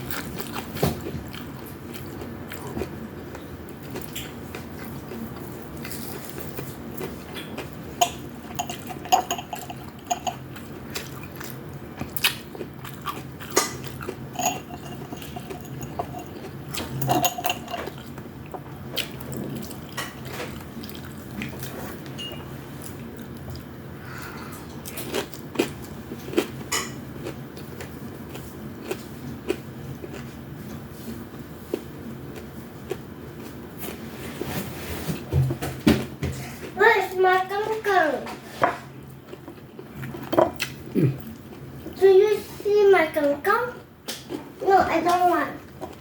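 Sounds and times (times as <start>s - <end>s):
chewing and mouth sounds: 0.0s - 34.1s, 39.0s - 42.0s
low steady hum: 3.2s - 26.8s
utensils clicking on plates: 8.0s - 10.4s, 13.6s - 18.0s.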